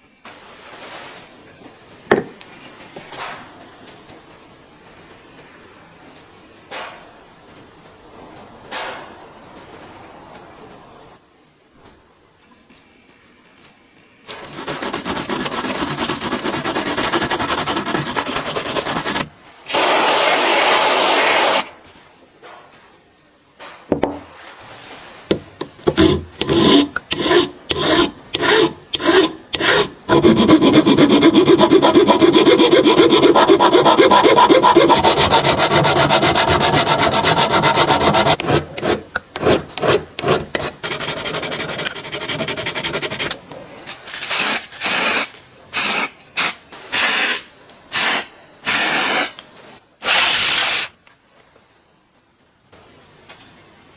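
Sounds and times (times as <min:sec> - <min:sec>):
brief loud hiss: 0:44.2 - 0:49.4.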